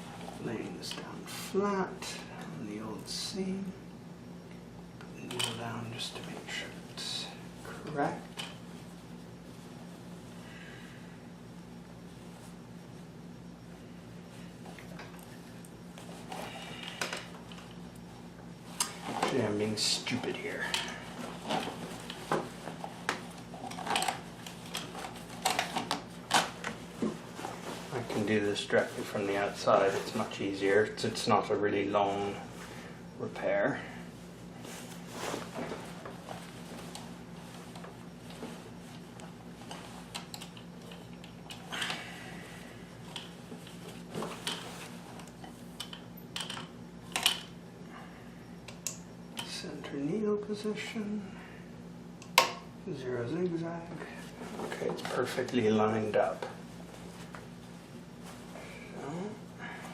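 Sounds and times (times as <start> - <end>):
steady low hum: 0.0 - 59.9.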